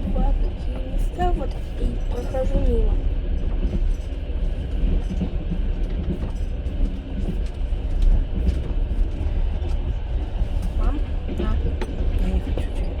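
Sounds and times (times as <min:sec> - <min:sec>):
train wheels rumbling on rails: 0:00.0 - 0:13.0.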